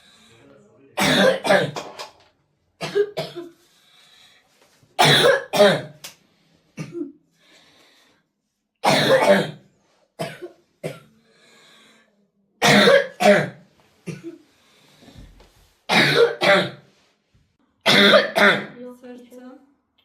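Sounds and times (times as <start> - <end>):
faint breaths drawn in: 0.0 - 0.8, 3.4 - 5.0, 6.2 - 8.8, 9.7 - 12.4, 13.6 - 15.9
child coughing: 1.0 - 2.1, 2.8 - 3.5, 5.0 - 6.0, 6.8 - 7.1, 8.8 - 9.6, 10.2 - 11.1, 12.6 - 14.4, 15.9 - 16.8, 17.9 - 18.8.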